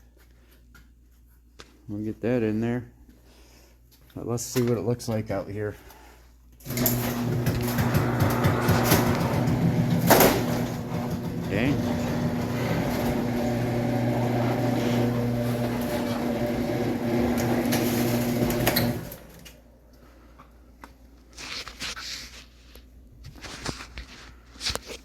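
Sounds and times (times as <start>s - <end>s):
low mechanical hum: 5.8s - 21.0s.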